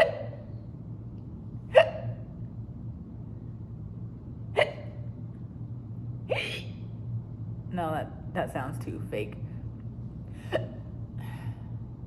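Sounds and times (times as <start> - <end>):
woman making fake hiccups: 0.0 - 0.4, 1.7 - 2.2, 4.6 - 5.0, 6.3 - 6.7, 10.5 - 10.8.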